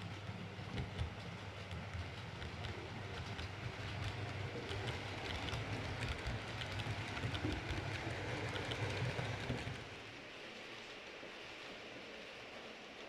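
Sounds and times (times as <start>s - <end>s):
wheels clicking over track: 0.6s - 10.0s.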